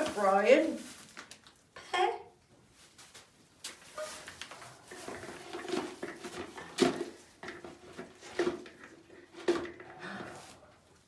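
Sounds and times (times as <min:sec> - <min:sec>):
sharp knocks and clatters: 0:04.9 - 0:09.9.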